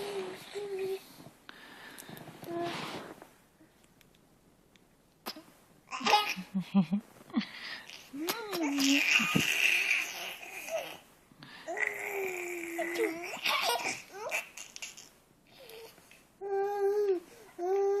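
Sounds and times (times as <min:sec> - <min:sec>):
baby babbling and laughing: 0:07.9 - 0:11.0, 0:11.7 - 0:18.0.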